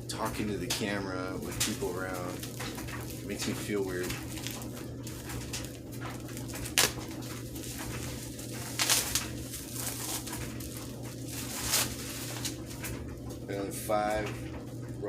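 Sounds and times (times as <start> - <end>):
steady low hum: 0.0 - 15.0
sharp handling noises: 1.4 - 13.1.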